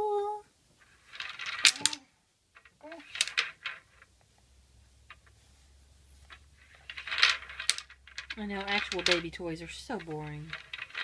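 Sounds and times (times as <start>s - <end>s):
small hard toys clattering: 0.8s - 4.2s, 6.2s - 11.0s.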